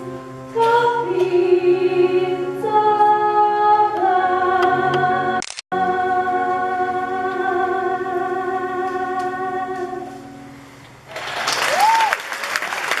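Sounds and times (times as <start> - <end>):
audience applause: 11.1 - 13.0.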